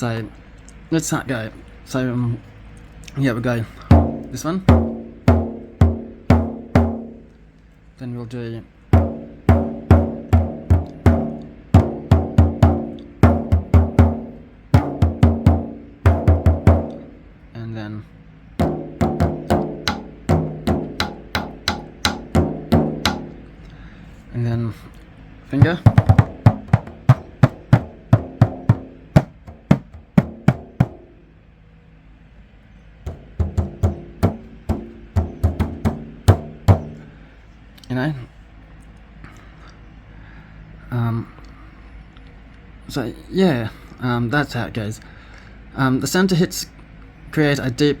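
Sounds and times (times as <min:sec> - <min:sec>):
frame drum thuds: 0:03.9 - 0:07.4, 0:08.9 - 0:17.2, 0:18.6 - 0:23.6, 0:25.6 - 0:31.2, 0:33.0 - 0:37.2.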